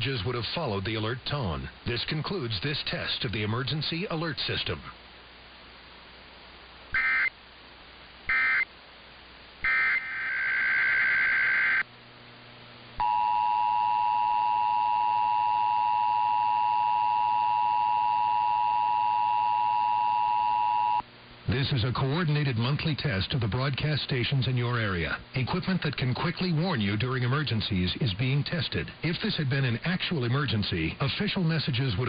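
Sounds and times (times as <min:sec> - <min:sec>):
screechy digital data bursts: 0:09.6 - 0:11.8.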